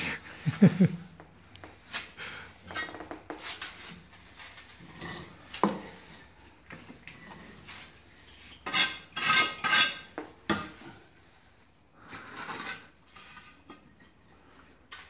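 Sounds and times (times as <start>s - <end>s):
trowel scraping mortar on brick: 8.6s - 10.8s.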